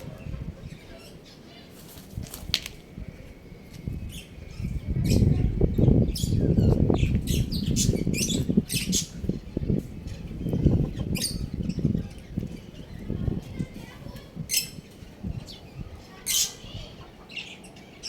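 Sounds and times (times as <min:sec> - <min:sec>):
high-pitched bird chirps: 0:04.0 - 0:12.4.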